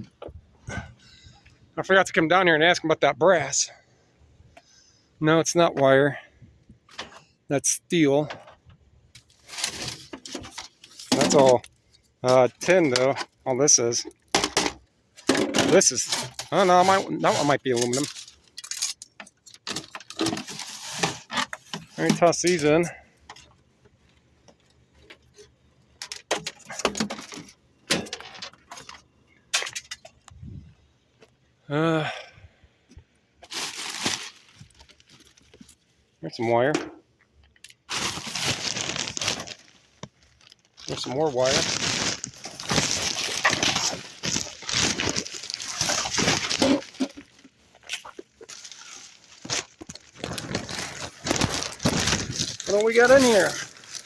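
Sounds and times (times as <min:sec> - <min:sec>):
debris rustling and clattering: 0:08.2 - 0:30.3, 0:33.4 - 0:35.8, 0:37.4 - 0:54.0.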